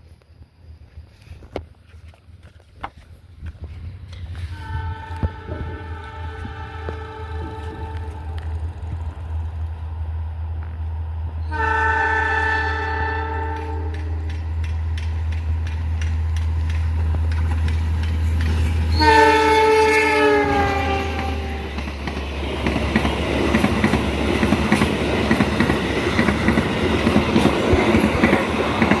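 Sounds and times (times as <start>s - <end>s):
diesel locomotive engine rumble: 0.0s - 29.0s
train horn: 4.3s - 8.6s, 11.4s - 14.4s, 18.9s - 21.8s
train wheels clacking over rail joints: 13.5s - 29.0s.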